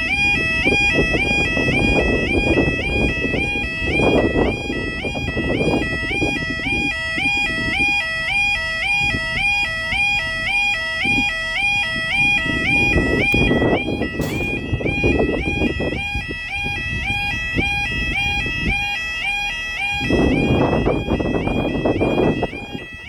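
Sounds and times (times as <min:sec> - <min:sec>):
level crossing alarm two-tone: 0:00.1 - 0:23.0
low rumbling noise: 0:12.3 - 0:17.0.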